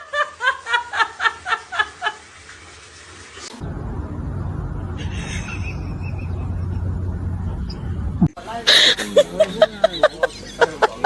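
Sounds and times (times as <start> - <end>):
low rumbling noise: 3.6 - 8.4
person laughing: 5.0 - 7.1.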